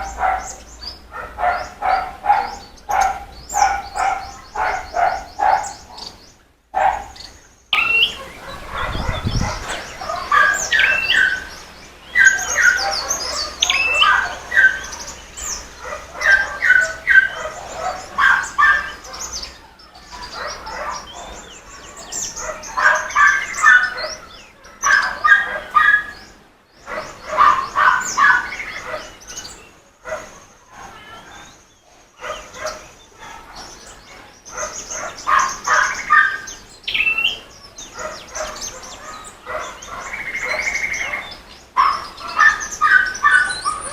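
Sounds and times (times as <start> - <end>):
small birds chirping and singing: 0.0 - 43.9.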